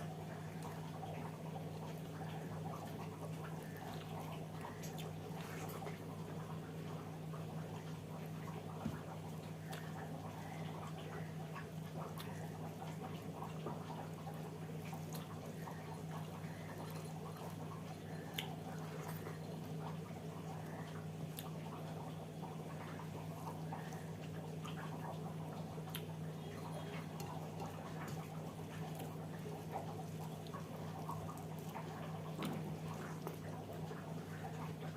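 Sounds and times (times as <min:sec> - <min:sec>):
steady low hum: 0:00.0 - 0:34.9
wet chewing and mouth smacking: 0:00.5 - 0:06.6, 0:10.8 - 0:20.0, 0:20.6 - 0:22.0, 0:24.6 - 0:26.2, 0:26.8 - 0:34.6.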